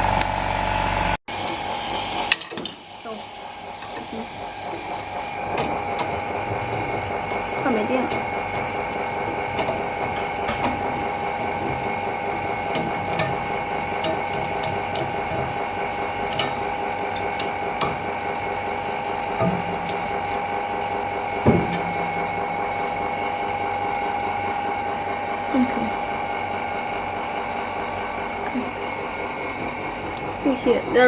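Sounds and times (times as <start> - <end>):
workshop machinery hum with whine: 0.0 - 31.0.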